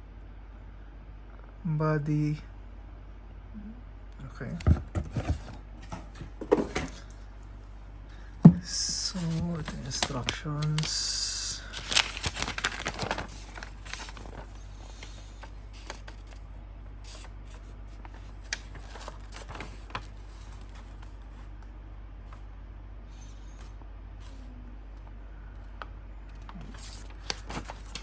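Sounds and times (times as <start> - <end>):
paper rustling and pages turning: 4.6 - 7.0, 8.4 - 16.4, 17.0 - 21.4, 26.3 - 28.0.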